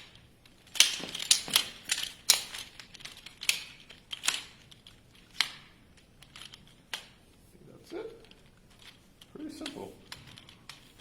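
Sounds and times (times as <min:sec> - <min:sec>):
chair poles snapping into joints: 0:00.7 - 0:04.6.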